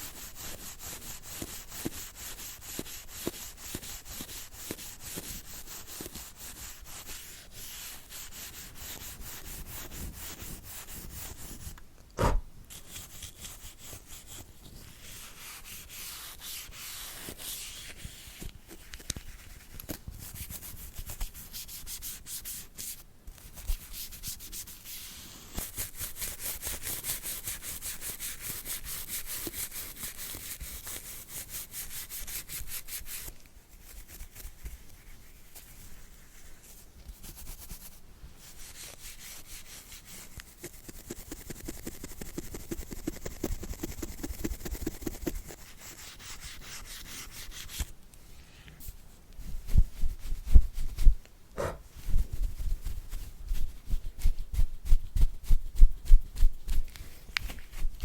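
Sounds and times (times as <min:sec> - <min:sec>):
brush scrubbing: 0:00.0 - 0:11.7, 0:12.7 - 0:18.5, 0:25.5 - 0:47.9
sharp knock: 0:12.2 - 0:12.5.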